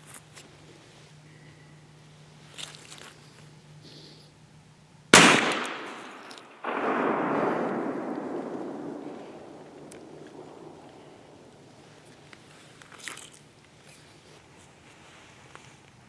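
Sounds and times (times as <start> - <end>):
gunshot crack: 5.2 - 12.0
rolling rumble: 5.5 - 12.7.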